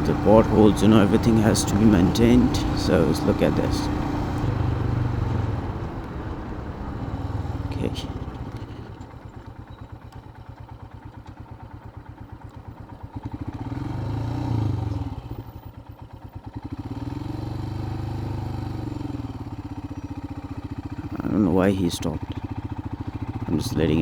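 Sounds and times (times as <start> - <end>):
motorcycle engine thudding: 0.0 - 13.7.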